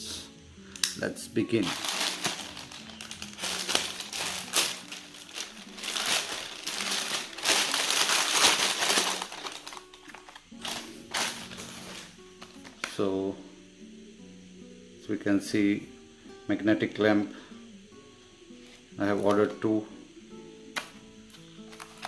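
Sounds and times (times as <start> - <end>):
quiet background music: 0.0 - 22.0
packaging crinkling and crackling: 1.5 - 13.0, 21.7 - 22.0.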